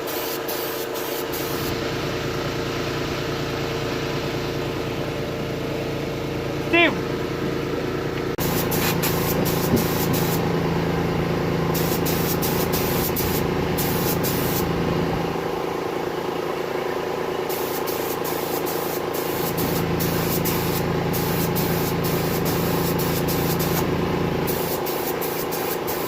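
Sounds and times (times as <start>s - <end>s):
mechanical hum with rush: 0.0s - 26.0s
high hiss bursts: 8.4s - 10.4s, 24.5s - 26.0s.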